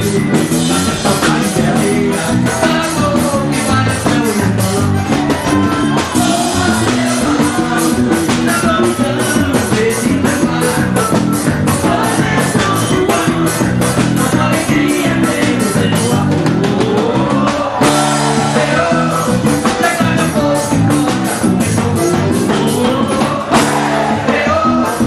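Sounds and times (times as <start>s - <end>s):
band music with steady beat: 0.0s - 25.0s.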